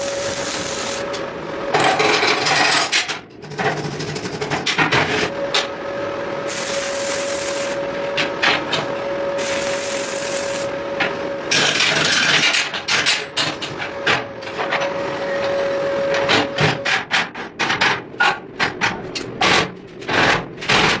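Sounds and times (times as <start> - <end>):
machine humming: 0.0 - 1.8, 5.3 - 11.9
hissing bursts: 6.5 - 7.8, 9.4 - 10.7.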